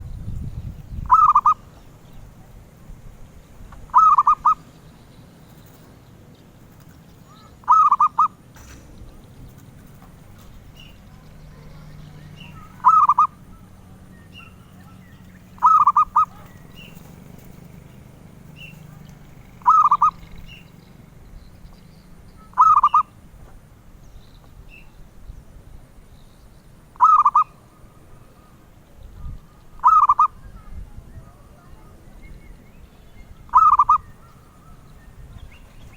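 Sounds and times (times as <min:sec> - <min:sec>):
dove cooing: 0:01.0 - 0:02.6, 0:03.8 - 0:04.8, 0:06.8 - 0:08.4, 0:09.5 - 0:21.0, 0:22.2 - 0:23.2, 0:27.0 - 0:28.7, 0:29.6 - 0:30.7, 0:33.5 - 0:35.9.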